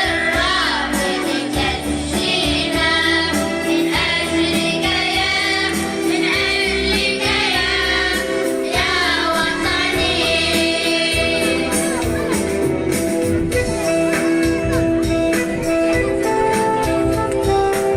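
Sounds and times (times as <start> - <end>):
choir singing: 0.0 - 12.0
backing music with steady beat: 0.0 - 17.9.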